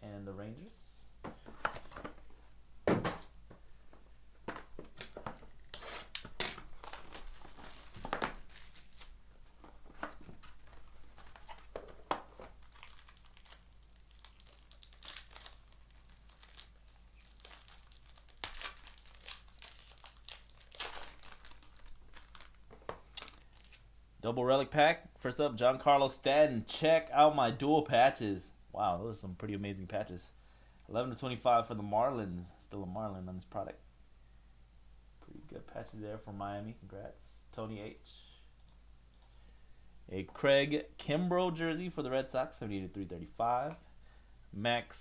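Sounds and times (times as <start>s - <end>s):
plastic wrapping crinkling and tearing: 5.7s - 23.8s.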